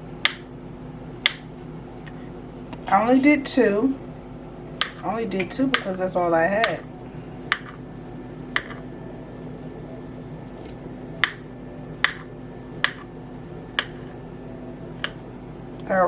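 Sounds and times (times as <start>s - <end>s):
steady low hum: 0.0s - 16.0s
knife tapping cutting board: 7.5s - 7.8s, 8.6s - 8.8s, 12.0s - 12.2s, 12.8s - 13.0s, 13.8s - 14.1s.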